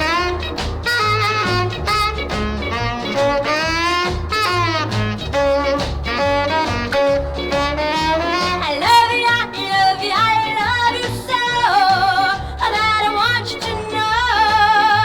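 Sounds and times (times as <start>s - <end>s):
steady beat: 0.0s - 12.2s
saxophone line bending in pitch: 0.0s - 15.0s
upright bass: 0.0s - 15.0s.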